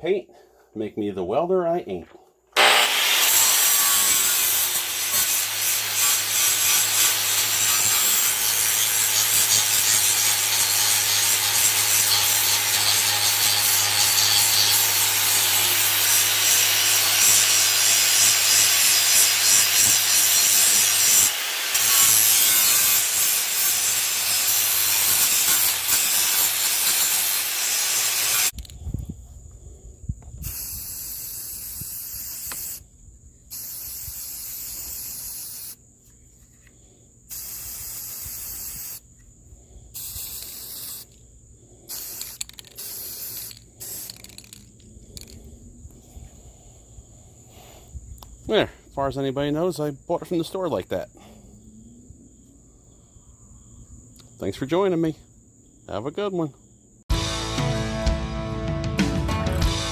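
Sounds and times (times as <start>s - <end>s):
angle grinder grinding metal: 2.6s - 28.6s
short hiss: 41.9s - 44.6s.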